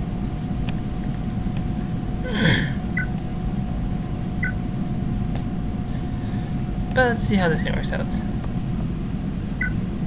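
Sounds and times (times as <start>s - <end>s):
steady background hum: 0.0s - 10.0s
person sighing: 2.2s - 2.8s.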